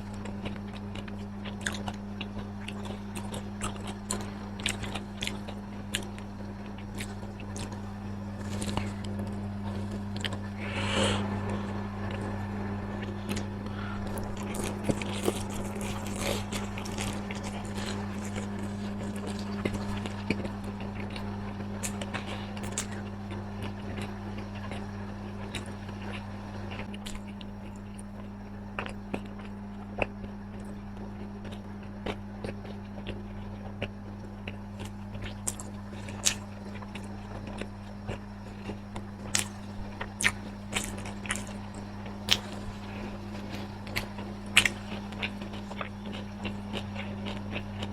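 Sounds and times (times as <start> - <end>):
steady low hum: 0.0 - 47.9
person biting and chewing: 0.2 - 23.1, 25.5 - 28.2, 34.8 - 37.7, 38.5 - 47.9.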